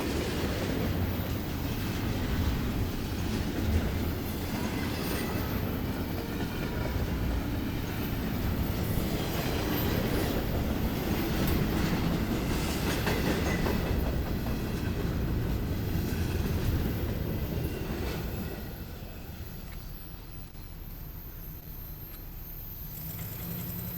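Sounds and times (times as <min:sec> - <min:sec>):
wheels clacking over rail joints: 0:00.0 - 0:18.8
freight train rumbling past: 0:00.0 - 0:23.9.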